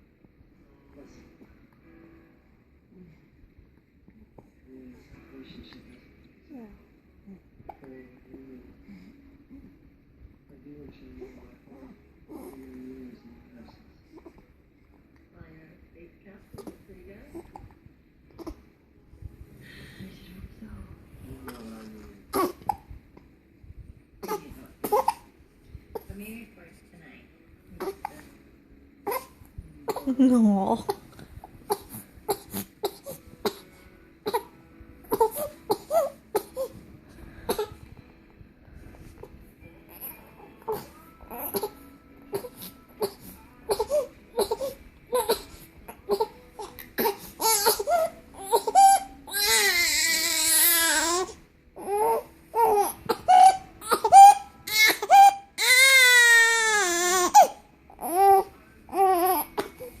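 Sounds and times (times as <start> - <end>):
baby crying: 39.9 - 59.8.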